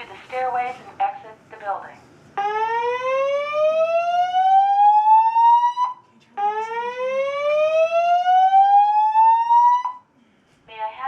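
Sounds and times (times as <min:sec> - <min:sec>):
fire alarm rising whoop: 0:02.4 - 0:10.0.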